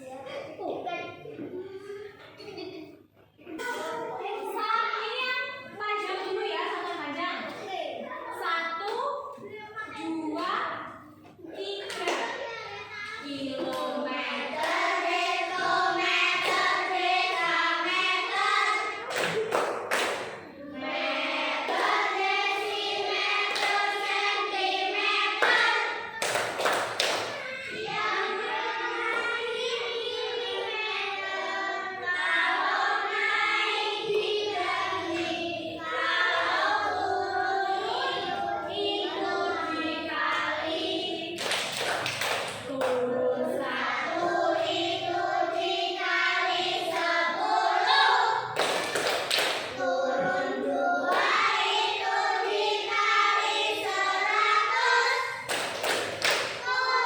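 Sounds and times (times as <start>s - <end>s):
clapping: 11.8s - 12.4s, 19.1s - 20.4s, 25.4s - 27.5s, 41.4s - 43.0s, 48.6s - 49.8s, 55.4s - 56.7s
children singing in chorus: 13.1s - 19.5s, 20.2s - 57.0s.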